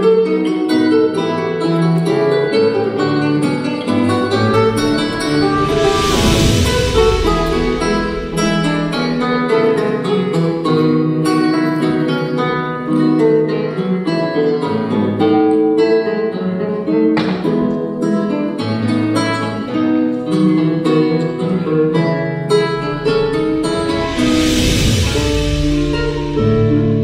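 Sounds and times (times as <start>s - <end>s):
acoustic guitar plucking: 0.0s - 6.0s, 7.3s - 23.8s
burst of noise: 3.7s - 10.0s, 22.5s - 27.0s.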